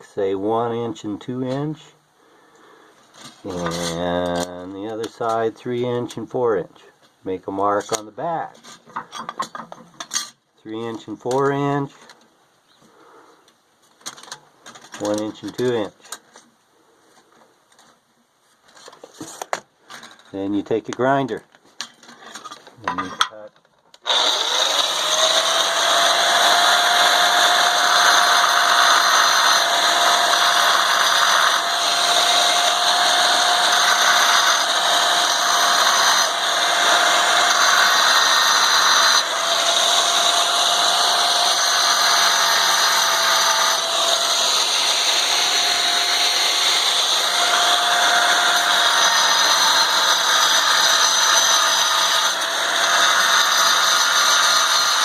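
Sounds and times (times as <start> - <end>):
angle grinder cutting tile: 3.3 - 5.4, 24.0 - 55.0.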